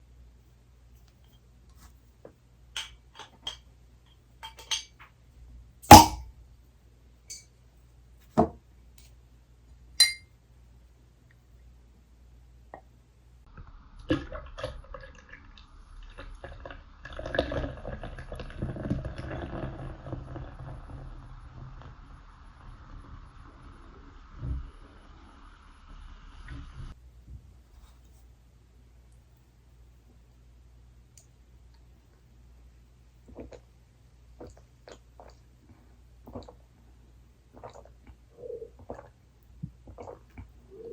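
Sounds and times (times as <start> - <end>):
glasses clinking: 5.9 - 6.2, 10.0 - 10.2.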